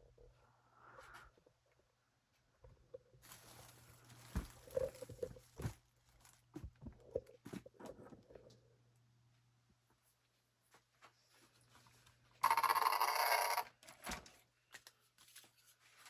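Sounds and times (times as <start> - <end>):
rustling: 3.2 - 6.7.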